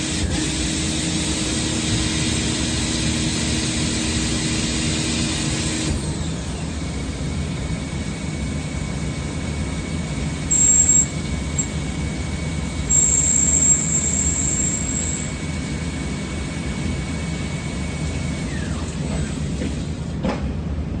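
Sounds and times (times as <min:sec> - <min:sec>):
high machine whine: 0:00.0 - 0:19.7
lathe rushing machine noise: 0:00.0 - 0:20.1
high-pitched whistles: 0:10.5 - 0:11.8, 0:12.9 - 0:15.4.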